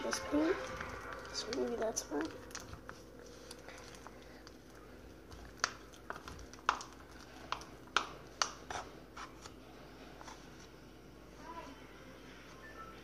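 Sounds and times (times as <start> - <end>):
slime clicking and snapping: 5.2 - 8.8.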